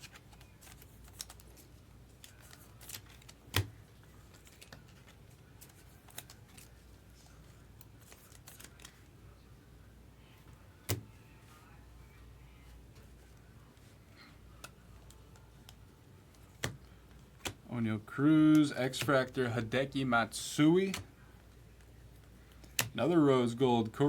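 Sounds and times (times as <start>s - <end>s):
trading cards flipping: 0.0s - 9.1s, 14.5s - 17.6s, 21.8s - 23.0s.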